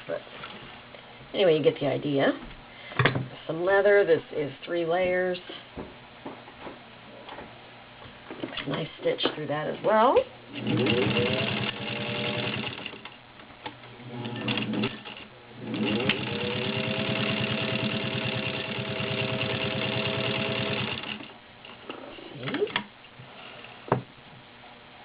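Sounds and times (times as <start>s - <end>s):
sewing machine motor whine: 10.5s - 13.2s, 14.0s - 21.8s.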